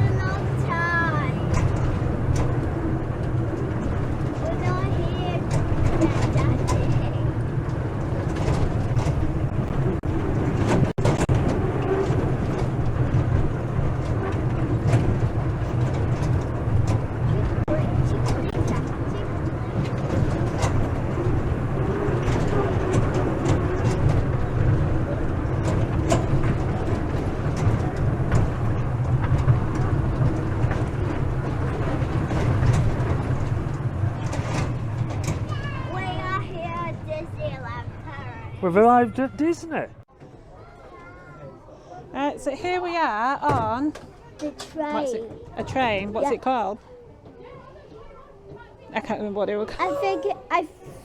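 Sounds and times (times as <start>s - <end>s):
sharp clicks and clacks: 0.0s - 37.8s
ride train rumbling: 0.0s - 51.0s.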